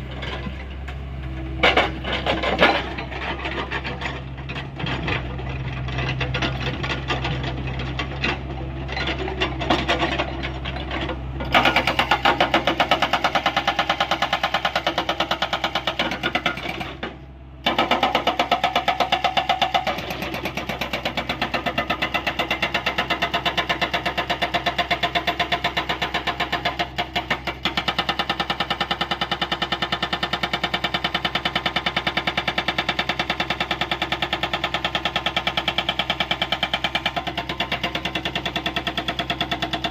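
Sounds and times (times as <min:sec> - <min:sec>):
excavator diesel engine: 0:00.0 - 0:39.9
hydraulic rock breaker hammering: 0:09.4 - 0:39.9.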